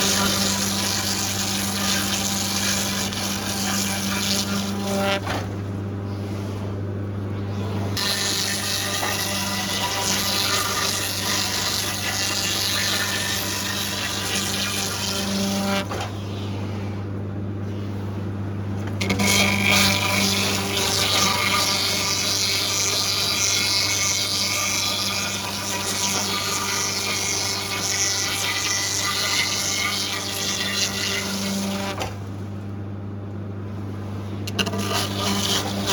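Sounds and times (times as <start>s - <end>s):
sawmill motor hum: 0.0s - 35.9s.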